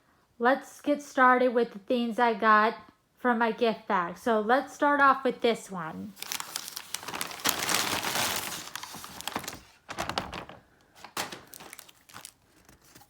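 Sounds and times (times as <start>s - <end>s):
paper bag rustling and crinkling: 6.1s - 13.0s.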